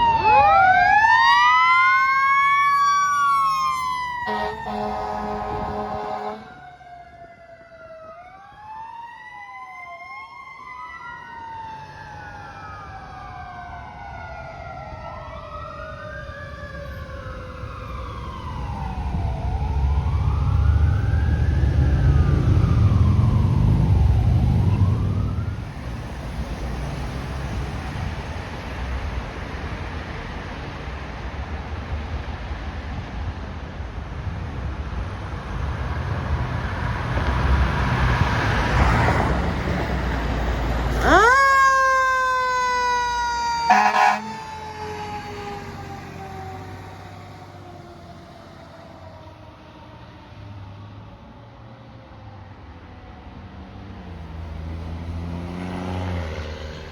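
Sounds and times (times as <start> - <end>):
fire truck sirens wailing: 0.0 - 30.4, 35.2 - 53.4
traffic noise: 0.0 - 56.9
loud engine rumble: 35.1 - 48.9.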